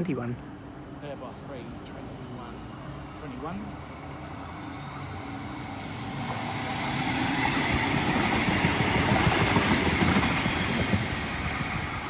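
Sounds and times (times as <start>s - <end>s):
sharp hiss: 5.8s - 8.2s
tram wheels rumbling and rattling: 7.9s - 12.0s.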